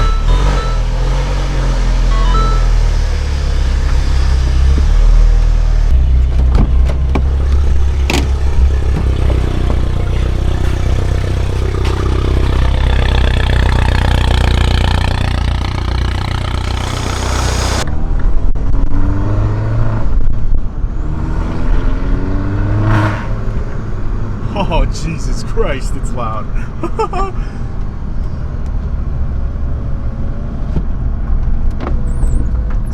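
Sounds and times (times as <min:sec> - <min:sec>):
car engine accelerating: 0:00.0 - 0:25.0
road and wind noise: 0:00.0 - 0:32.9.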